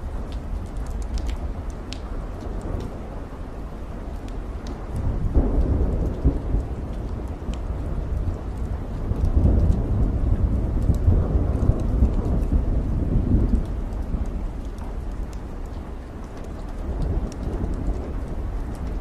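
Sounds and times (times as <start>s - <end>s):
raindrop ticks: 0.0s - 19.0s
steady rain: 0.0s - 19.0s
thunder rolling: 4.7s - 15.4s.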